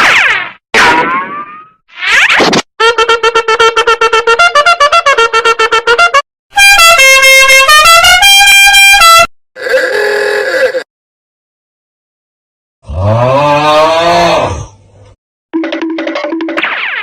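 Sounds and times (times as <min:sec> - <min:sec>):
brassy horn tune: 0:02.8 - 0:09.3.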